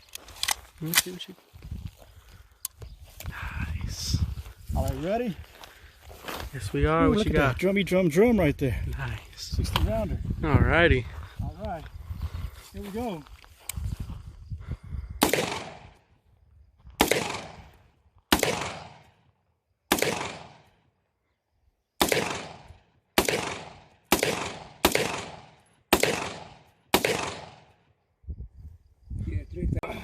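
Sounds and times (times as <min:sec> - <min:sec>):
rifle shots with long echo: 0:15.2 - 0:16.2, 0:17.0 - 0:21.0, 0:22.0 - 0:28.0.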